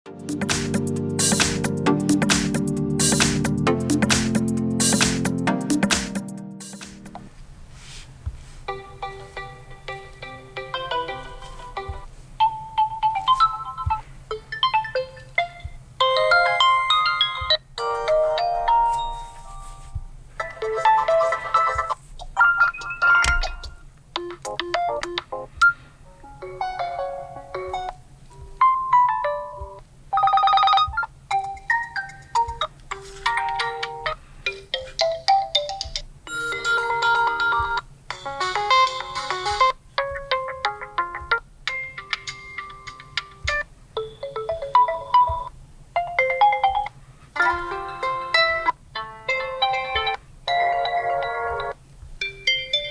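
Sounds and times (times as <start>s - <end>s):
electronic ringtone melodies: 8.8s - 25.5s, 26.2s - 52.9s
electronic chime ringtones: 36.3s - 39.7s.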